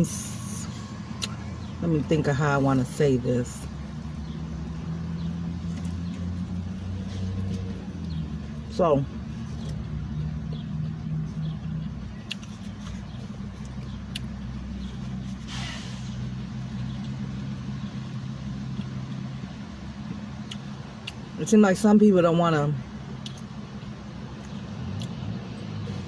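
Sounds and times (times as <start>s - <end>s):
low engine hum: 0.0s - 26.0s
brief rush of noise: 15.5s - 16.2s.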